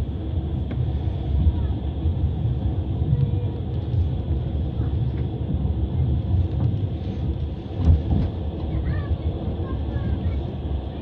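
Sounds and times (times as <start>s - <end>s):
train wheels rumbling on rails: 0.0s - 11.0s
knocks in train carriage: 7.8s - 8.4s.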